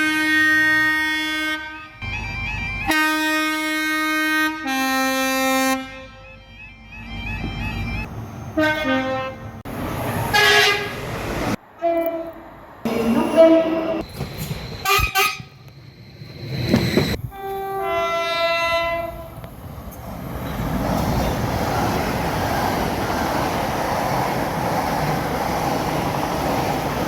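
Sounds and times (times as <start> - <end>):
train horn blasts: 0.0 - 6.6, 8.6 - 9.6, 10.3 - 11.0, 11.8 - 14.0, 14.8 - 15.6, 17.3 - 19.3
train rushing on rails: 0.0 - 27.0.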